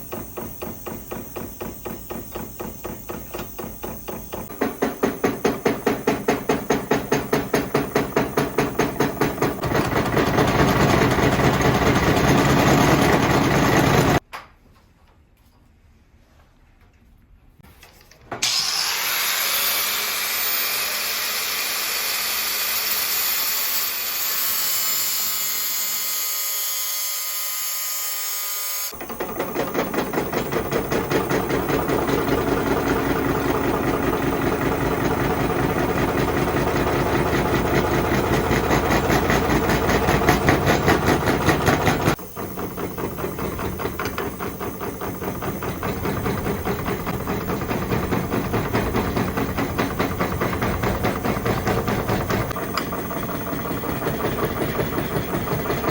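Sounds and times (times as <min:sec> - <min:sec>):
power tool motor whine: 0:18.4 - 0:55.9
pulsing machining noise: 0:18.4 - 0:55.9.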